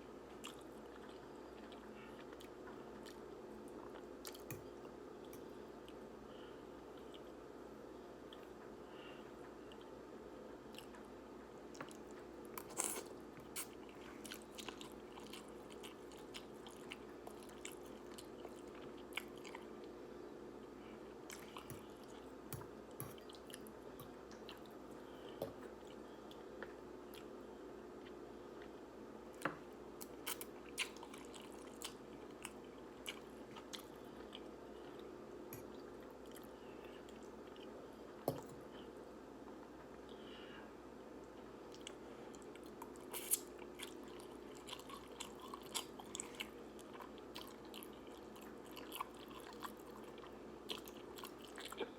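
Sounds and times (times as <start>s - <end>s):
steady low hum: 0.0s - 51.9s
chewing noodles with mouth clicks: 41.7s - 51.9s.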